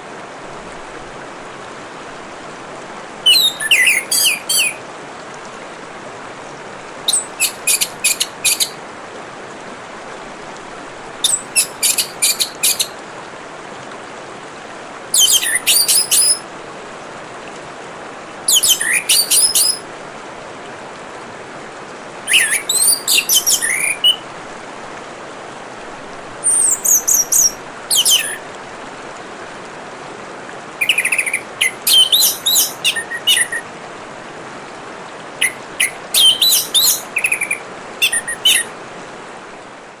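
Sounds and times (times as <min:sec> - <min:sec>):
trickle of running water: 0:00.0 - 0:40.0
bird singing high-pitched phrases: 0:03.2 - 0:04.8, 0:07.1 - 0:08.8, 0:11.2 - 0:13.0, 0:15.2 - 0:16.4, 0:18.5 - 0:19.8, 0:22.3 - 0:24.2, 0:26.4 - 0:28.4, 0:30.8 - 0:33.6, 0:35.4 - 0:38.7.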